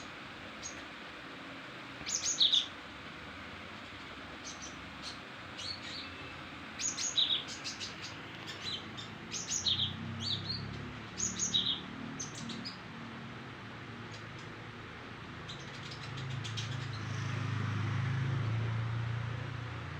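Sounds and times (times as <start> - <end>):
songbird singing sharp chirps: 2.0 - 2.7, 4.4 - 12.8.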